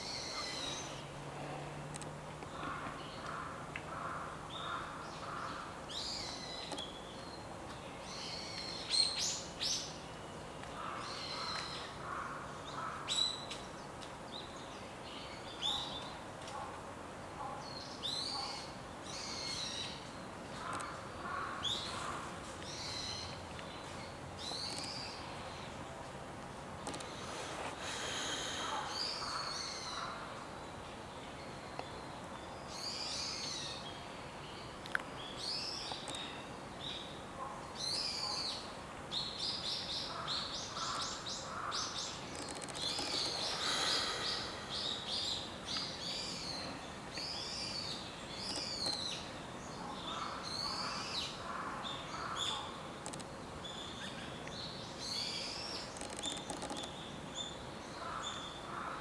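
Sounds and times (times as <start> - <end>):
sharp click: 53.0 - 53.3.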